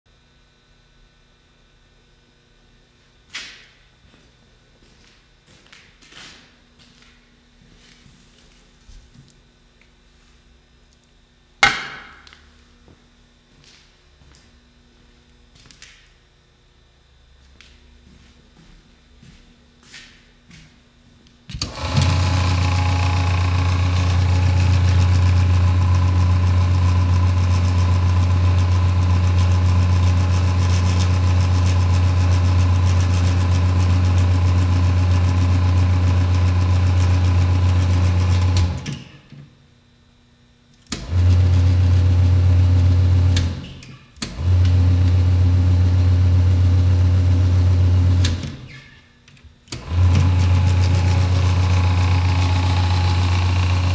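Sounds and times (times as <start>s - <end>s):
chip conveyor motor humming: 21.5s - 39.3s, 49.7s - 53.9s.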